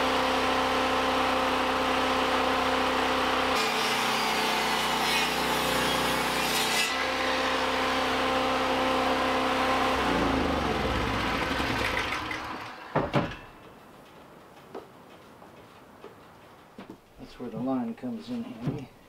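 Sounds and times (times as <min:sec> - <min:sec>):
power saw motor running: 0:00.0 - 0:13.0
sharp knocks: 0:12.9 - 0:13.8.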